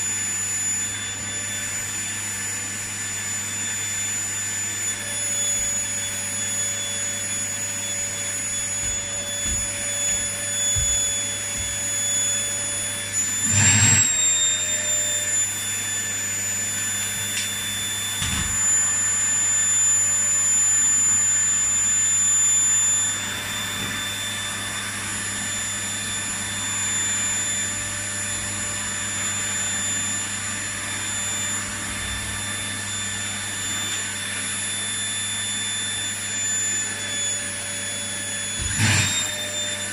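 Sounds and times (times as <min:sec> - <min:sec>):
vacuum cleaner running: 0:00.0 - 0:39.9
vacuum cleaner knock: 0:08.7 - 0:12.0, 0:38.6 - 0:39.4.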